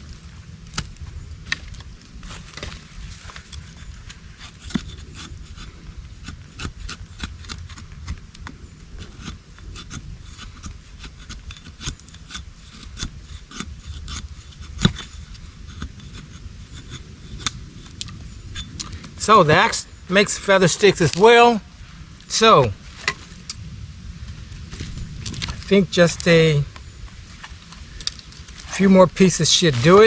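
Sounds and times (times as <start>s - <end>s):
axe blade scraping wood: 9.0s - 21.3s, 29.5s - 30.0s.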